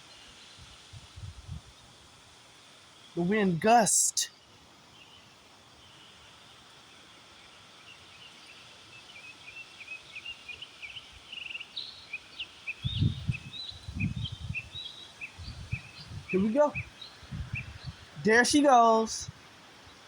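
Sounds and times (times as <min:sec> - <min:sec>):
small birds chirping: 0:00.0 - 0:20.0
wind buffeting microphone: 0:00.6 - 0:01.8, 0:12.8 - 0:19.4.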